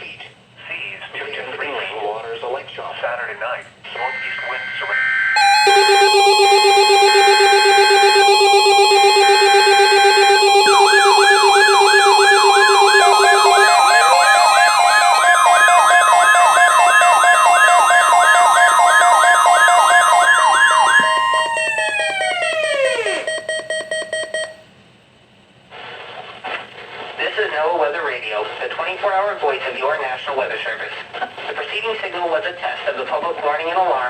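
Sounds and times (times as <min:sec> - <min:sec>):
siren-like sweep: 0:05.4 - 0:23.3
data tone bursts: 0:05.4 - 0:24.4
steady alarm tones: 0:05.4 - 0:24.5.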